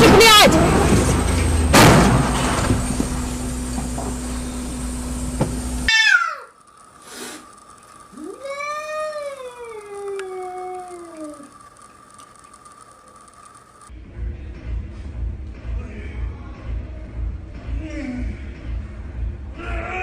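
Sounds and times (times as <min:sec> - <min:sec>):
low hum: 0:00.0 - 0:15.7
cat meowing: 0:08.2 - 0:11.5.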